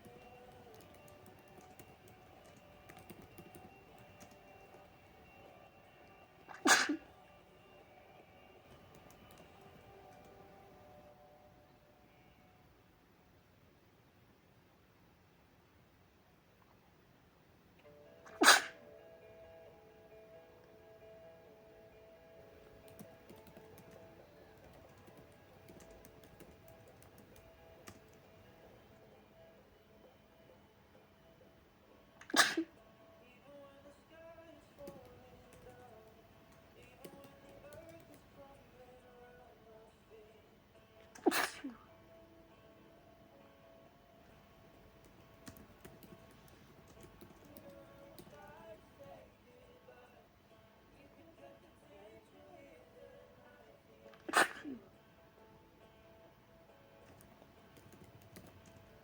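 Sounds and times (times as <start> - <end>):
faint clicks: 0.0 - 7.4, 8.6 - 10.6, 22.6 - 29.0, 34.1 - 39.2, 44.2 - 49.2, 57.0 - 59.0
faint steady tones: 0.0 - 59.0
loud sneeze: 6.5 - 7.1, 18.3 - 18.8, 32.2 - 32.7, 41.2 - 41.8, 54.2 - 54.8.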